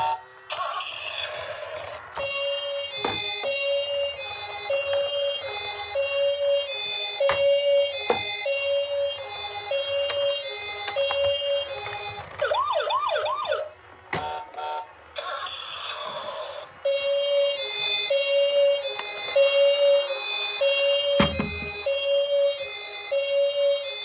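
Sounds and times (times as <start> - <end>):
two-tone ambulance siren: 0.0 - 24.0
siren whoops: 12.4 - 13.7.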